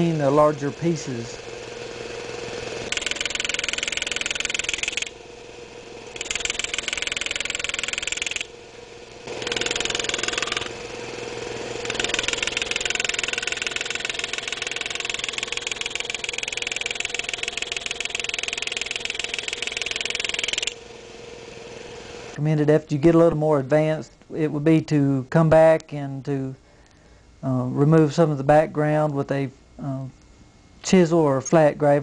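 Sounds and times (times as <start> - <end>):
pneumatic engraver buzzing ticks: 1.4 - 5.2, 6.0 - 8.6, 9.2 - 10.8, 11.4 - 20.8.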